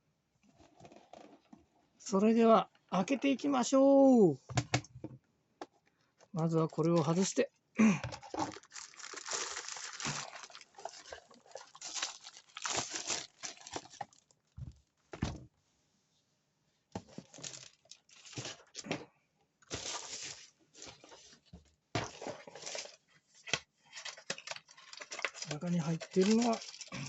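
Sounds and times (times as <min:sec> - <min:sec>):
packaging crinkling and tearing: 0:08.2 - 0:14.3, 0:17.2 - 0:18.8, 0:19.7 - 0:21.2, 0:23.8 - 0:27.0.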